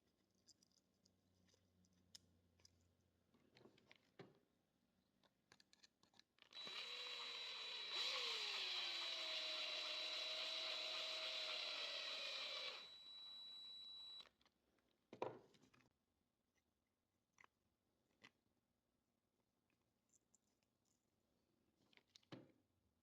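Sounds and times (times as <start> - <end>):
small electric motor whirring: 6.6 - 14.2.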